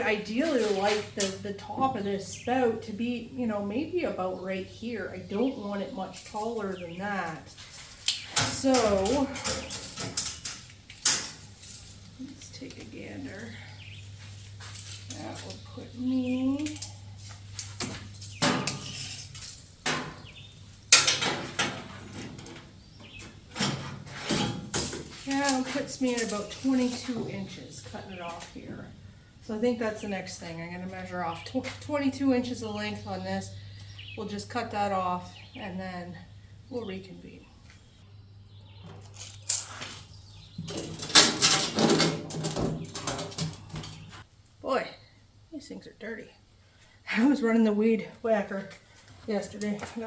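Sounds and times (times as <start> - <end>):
metal pipe rustling and scraping: 7.3 - 28.4
sheet metal duct clanking: 8.2 - 12.1, 17.8 - 27.3, 38.9 - 44.2.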